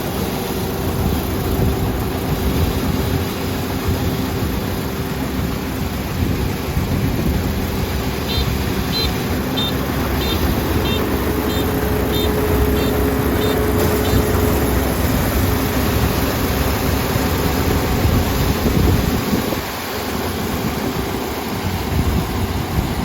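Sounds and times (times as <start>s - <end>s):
combine harvester running: 0.0s - 23.0s
short high beeps: 8.3s - 14.4s.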